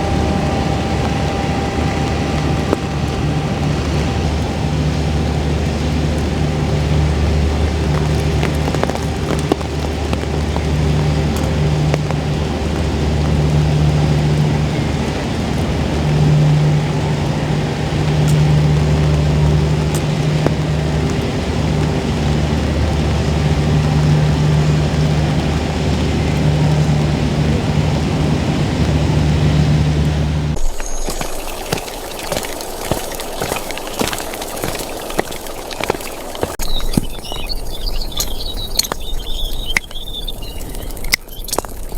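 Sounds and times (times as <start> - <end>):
large engine humming: 0.0 - 41.9
rain hissing: 0.0 - 41.9.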